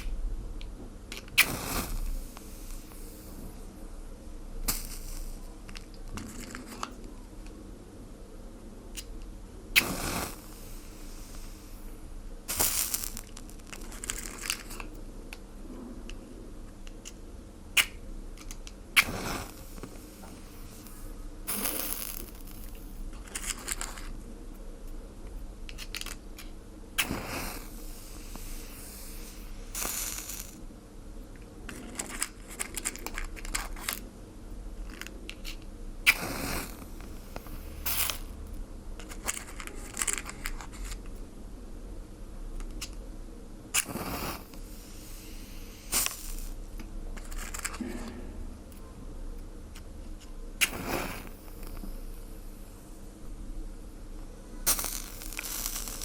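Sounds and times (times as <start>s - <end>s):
fire crackling and hissing: 1.3s - 3.6s, 4.6s - 5.7s, 9.7s - 14.9s, 19.0s - 24.2s, 26.9s - 30.6s, 36.0s - 38.4s, 43.7s - 47.5s, 50.6s - 53.0s, 54.7s - 56.0s.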